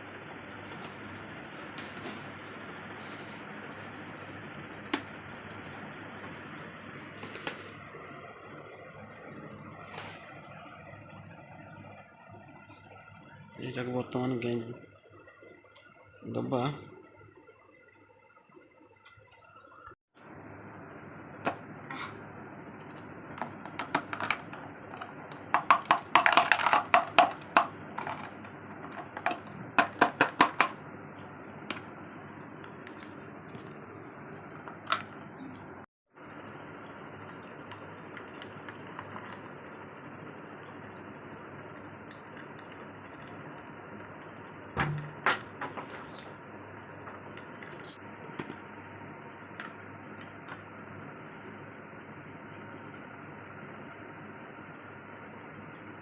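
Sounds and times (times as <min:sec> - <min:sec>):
small electric fan whirring: 0:00.0 - 0:56.0.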